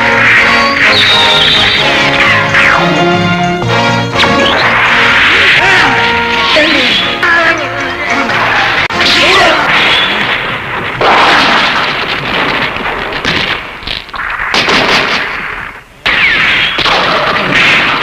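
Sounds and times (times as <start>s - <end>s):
harsh blast sound effects: 0.0s - 7.2s.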